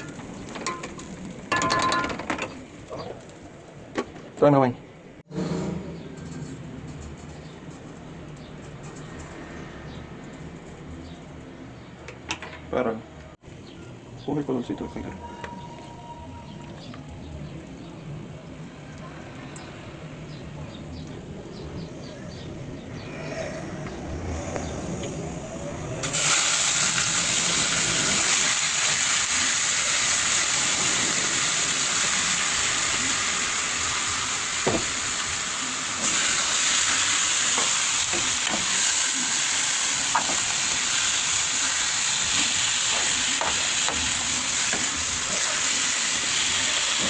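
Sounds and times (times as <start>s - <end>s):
chicken sizzling in a pot: 26.0s - 47.0s.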